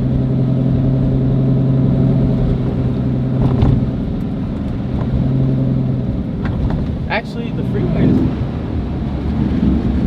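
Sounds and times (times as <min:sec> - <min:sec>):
car engine running: 0:00.0 - 0:10.0.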